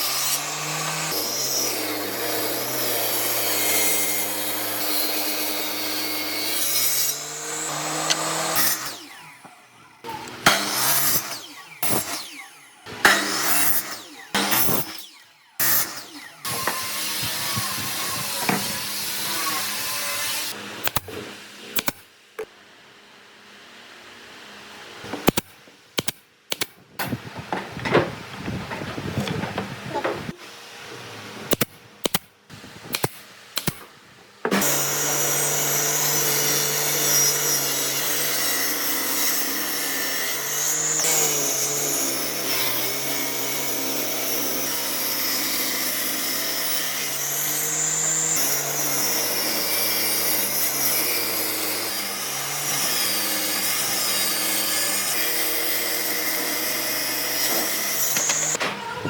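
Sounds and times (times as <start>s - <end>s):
power tool running on wood: 34.5s - 58.6s.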